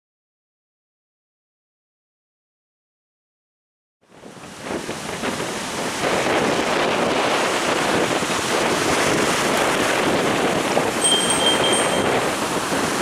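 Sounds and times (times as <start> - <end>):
wind blowing across microphone: 4.0 - 13.0
sea waves breaking: 4.1 - 13.0.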